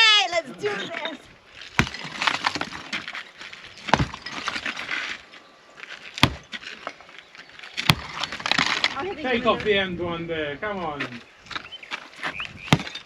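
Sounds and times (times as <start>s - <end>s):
debris clattering: 1.6s - 5.2s, 7.8s - 9.3s.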